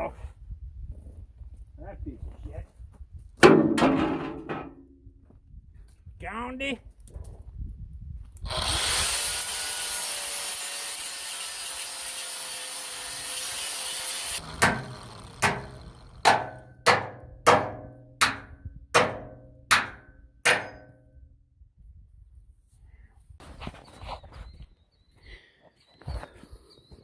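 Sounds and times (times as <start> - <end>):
grinder running on steel: 8.4 - 16.8
sharp ringing strikes on metal: 16.3 - 21.1.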